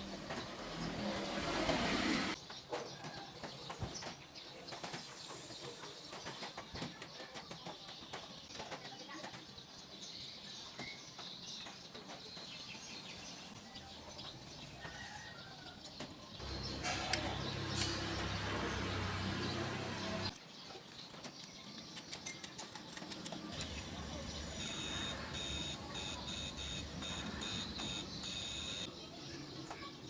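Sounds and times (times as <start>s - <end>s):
rustling with small clicks and taps: 2.4s - 12.8s, 20.3s - 23.8s.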